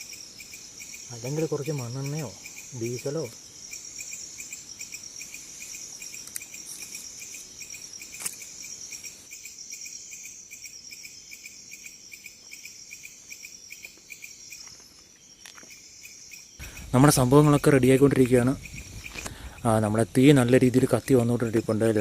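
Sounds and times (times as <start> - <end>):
crickets chirping: 0.0 - 22.0.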